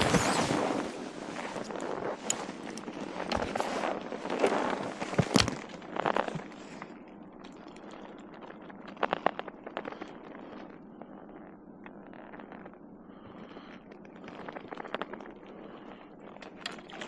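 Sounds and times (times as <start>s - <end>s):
rustling handling noise: 0.0s - 10.0s.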